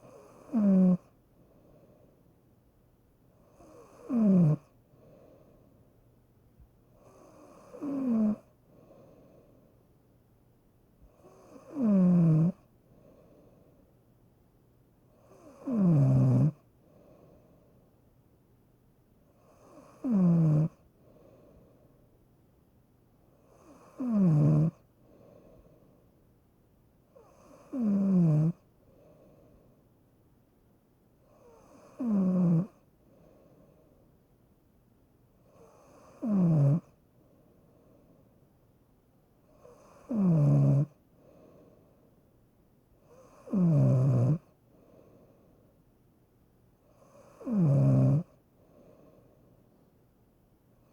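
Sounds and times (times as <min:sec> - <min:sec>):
loud snoring: 0:00.0 - 0:01.1, 0:03.5 - 0:04.7, 0:07.0 - 0:08.5, 0:11.2 - 0:12.6, 0:15.2 - 0:16.6, 0:19.4 - 0:20.8, 0:23.5 - 0:24.8, 0:27.2 - 0:28.6, 0:31.4 - 0:32.8, 0:35.5 - 0:36.9, 0:39.6 - 0:41.0, 0:43.1 - 0:44.5, 0:47.0 - 0:48.4
quiet breathing: 0:00.0 - 0:11.9, 0:12.5 - 0:15.8, 0:16.4 - 0:43.7, 0:44.3 - 0:50.9.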